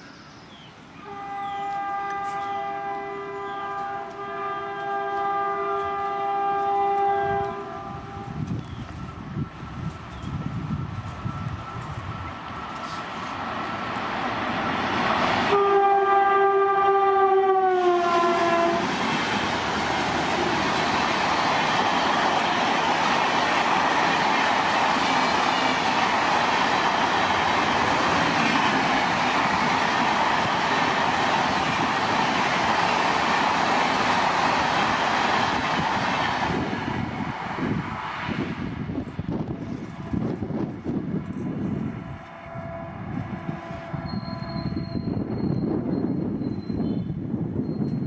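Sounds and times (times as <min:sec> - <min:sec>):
locomotive horn blast: 0:01.0 - 0:08.4, 0:15.5 - 0:19.0, 0:42.0 - 0:45.1
train wheels on rails: 0:01.6 - 0:48.0.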